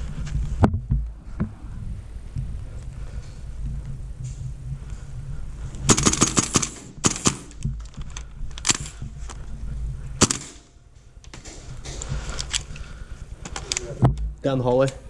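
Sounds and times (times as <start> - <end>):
airsoft rifle firing: 5.9 - 7.6, 10.2 - 10.7.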